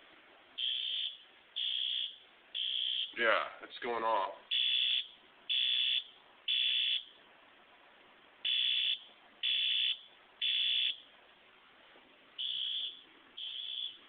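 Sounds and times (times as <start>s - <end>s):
fire alarm horn beeps: 0.6s - 3.2s, 4.5s - 7.1s, 8.5s - 11.0s, 12.4s - 14.0s.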